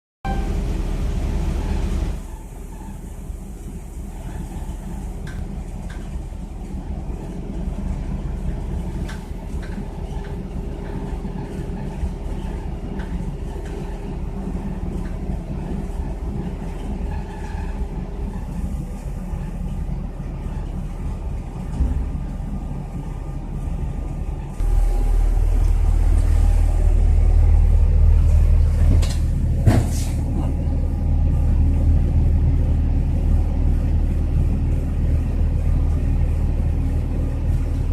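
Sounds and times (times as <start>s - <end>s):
rail vehicle engine rumble: 0.2s - 37.9s
rising whine: 24.6s - 28.9s.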